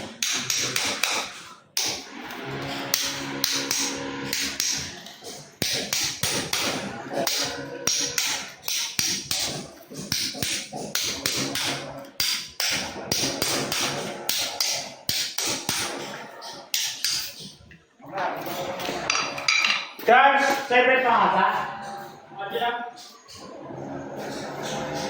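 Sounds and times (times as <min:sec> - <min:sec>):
hammer striking chisel: 0:00.2 - 0:02.0, 0:03.0 - 0:16.0, 0:16.7 - 0:17.4.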